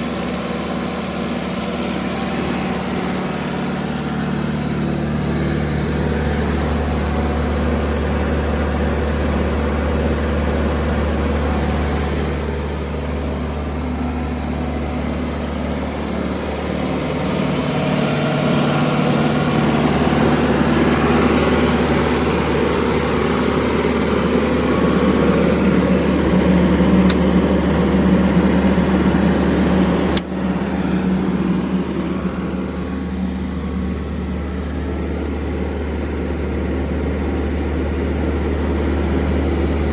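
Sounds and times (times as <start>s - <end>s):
air compressor diesel engine running: 0.0s - 39.9s.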